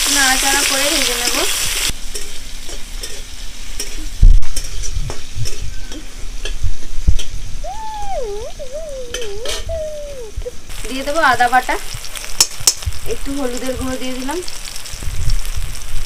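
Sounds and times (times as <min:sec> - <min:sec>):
tomato sizzling in hot oil: 0:00.0 - 0:16.0
metal spatula scraping pan: 0:02.0 - 0:06.6.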